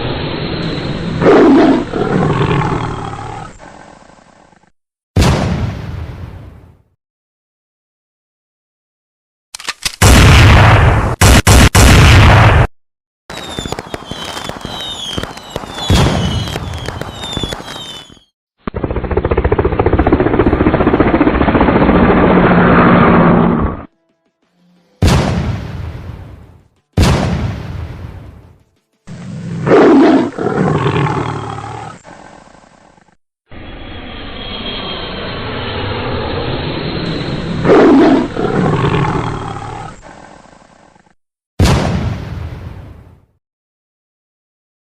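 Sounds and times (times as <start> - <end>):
animal roar: 1.2 - 4.7, 29.1 - 33.1, 37.6 - 41.2
gunfire: 5.2 - 6.0, 9.6 - 12.7, 13.3 - 18.1, 25.0 - 26.1, 27.0 - 28.5, 41.6 - 42.7
short falling whistles: 13.3 - 18.3
loud bang: 25.0 - 28.5.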